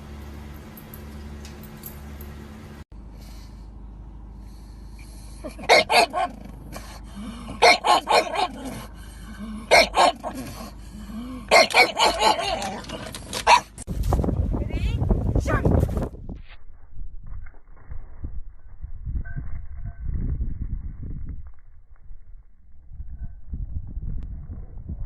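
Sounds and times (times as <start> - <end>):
dog barking: 5.6 - 6.4, 7.6 - 8.6, 9.7 - 10.4, 11.5 - 12.8, 13.4 - 13.7.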